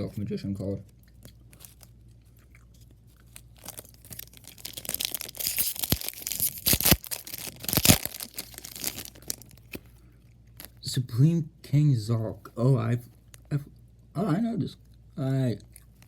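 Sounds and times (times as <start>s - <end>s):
foil wrapper tearing and crinkling: 3.3s - 9.8s.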